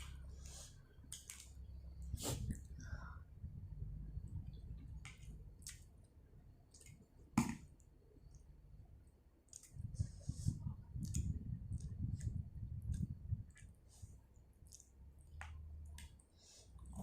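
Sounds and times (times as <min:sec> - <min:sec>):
wet mouth clicks and smacks: 0:05.0 - 0:05.9, 0:09.5 - 0:09.9, 0:11.0 - 0:13.8, 0:14.6 - 0:17.0
chewing: 0:14.6 - 0:15.0.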